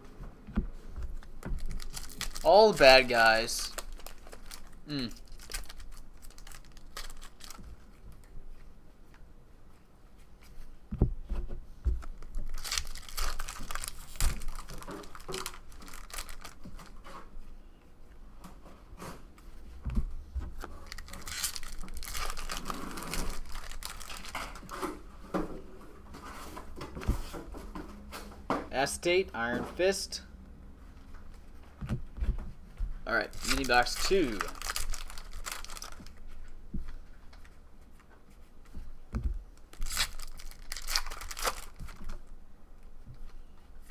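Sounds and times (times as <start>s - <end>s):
card wrappers tearing and crinkling: 1.2s - 8.3s, 12.1s - 17.0s, 20.8s - 24.8s, 33.2s - 36.4s, 39.6s - 42.2s.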